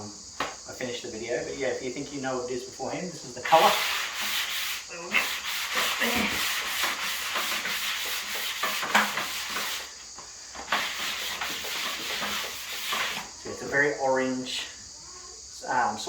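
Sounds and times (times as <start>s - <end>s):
sandpaper rubbing on wood: 3.4s - 10.0s, 10.6s - 13.3s.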